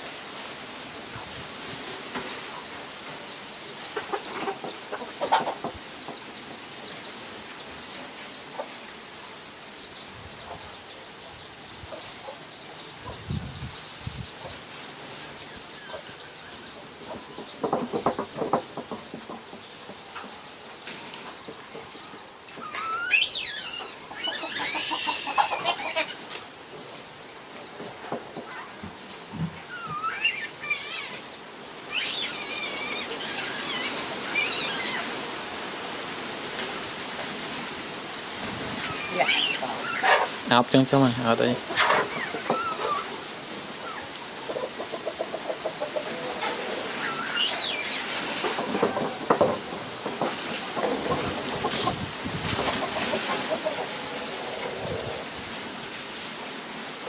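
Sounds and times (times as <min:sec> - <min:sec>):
chickens clucking: 0:00.9 - 0:09.4, 0:14.4 - 0:35.5, 0:38.4 - 0:55.6
high gliding chirping calls: 0:22.6 - 0:25.8, 0:29.7 - 0:31.2, 0:31.9 - 0:35.1, 0:38.8 - 0:40.2, 0:41.8 - 0:43.1, 0:46.9 - 0:48.1.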